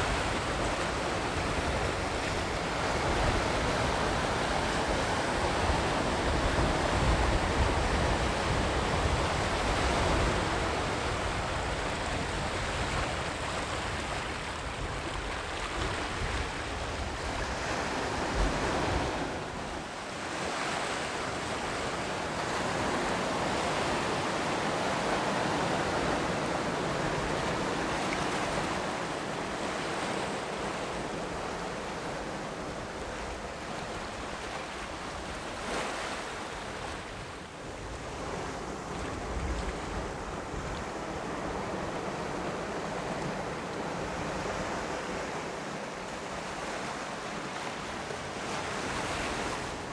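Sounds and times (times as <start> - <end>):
sea surf washing ashore: 0.0 - 49.9.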